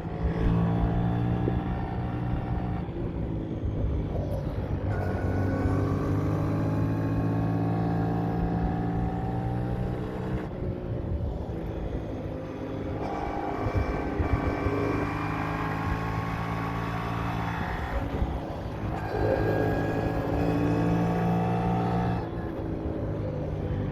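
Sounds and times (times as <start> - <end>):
motorcycle engine running: 13.0 - 22.7.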